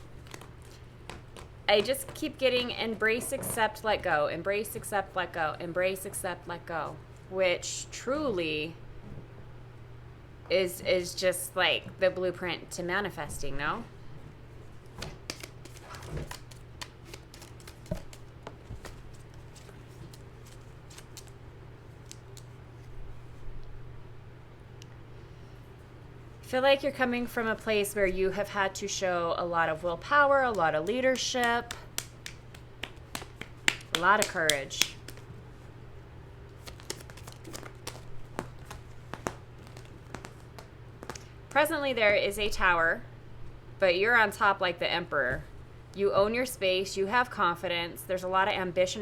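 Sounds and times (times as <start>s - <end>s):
cards being shuffled: 0.0s - 2.4s, 14.8s - 22.9s, 30.5s - 35.4s, 36.5s - 41.3s
steady low hum: 0.0s - 49.0s.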